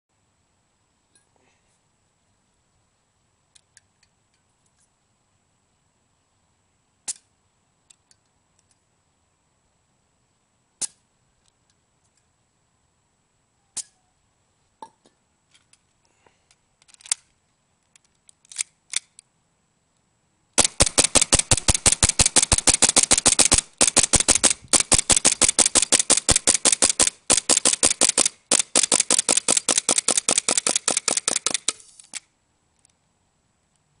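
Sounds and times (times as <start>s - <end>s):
airsoft pistol shots: 20.6s - 31.8s.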